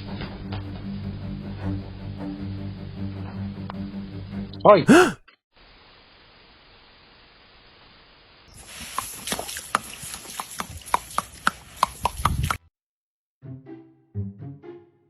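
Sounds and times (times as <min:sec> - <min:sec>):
faint hiss: 0:05.6 - 0:09.3.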